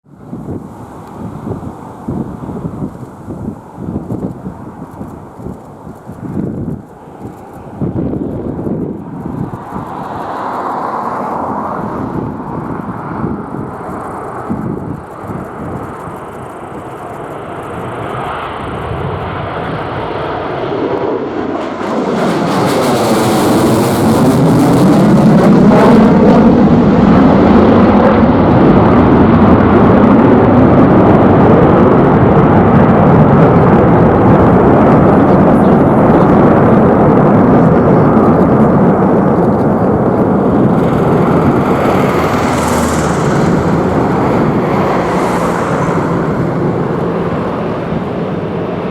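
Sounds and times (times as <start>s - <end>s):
jet engines roaring past: 0.1s - 48.9s
sweeping whoosh: 40.1s - 48.4s.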